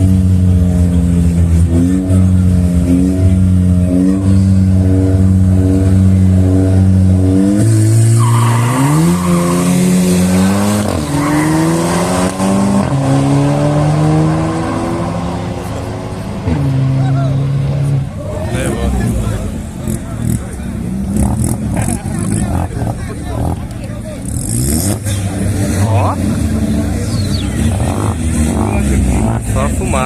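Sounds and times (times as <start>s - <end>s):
racing car engine revving: 0.0s - 30.0s
tyres squealing: 8.0s - 12.1s.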